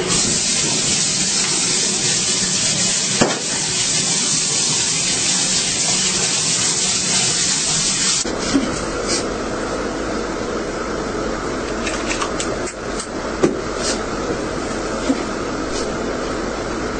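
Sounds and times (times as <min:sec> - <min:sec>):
hair dryer blowing: 0:00.0 - 0:08.3.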